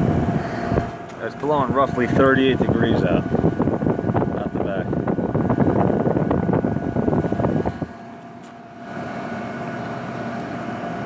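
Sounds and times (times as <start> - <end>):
air rushing against microphone: 0.0 - 8.0
air conditioner running hum: 0.0 - 11.0.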